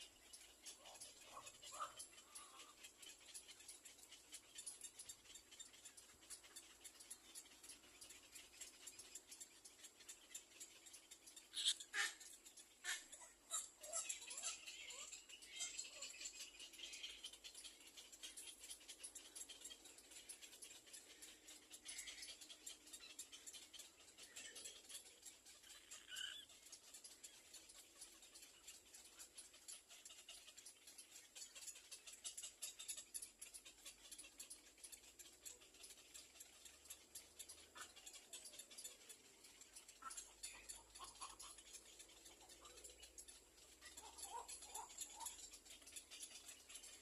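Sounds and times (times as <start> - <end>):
soft high bird peeps: 0.0 - 47.0.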